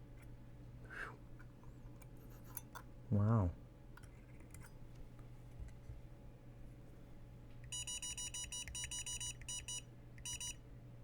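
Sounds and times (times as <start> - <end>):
low steady hum: 0.0 - 11.0
short electronic beeps: 7.7 - 10.6.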